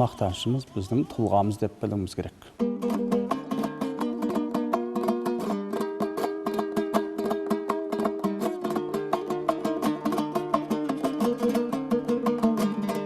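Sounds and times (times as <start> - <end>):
plucked string instrument: 2.6 - 13.0.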